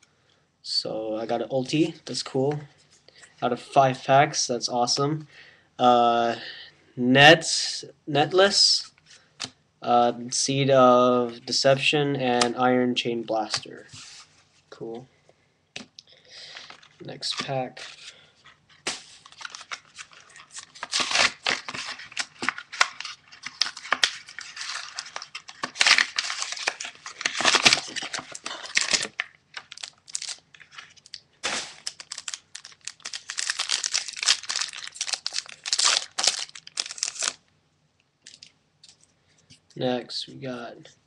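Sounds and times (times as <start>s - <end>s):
foil wrapper tearing and crinkling: 18.8s - 37.4s.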